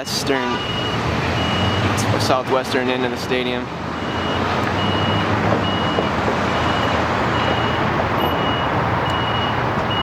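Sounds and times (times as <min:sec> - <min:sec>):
reversing alarm beeping: 0:00.0 - 0:02.0, 0:04.0 - 0:10.0
engines and traffic rumble: 0:00.0 - 0:10.0.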